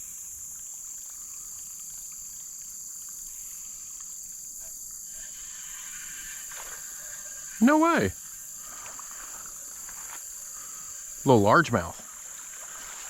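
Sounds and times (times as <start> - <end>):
insect chorus drone: 0.0 - 13.0
faint light ticks: 0.4 - 5.2.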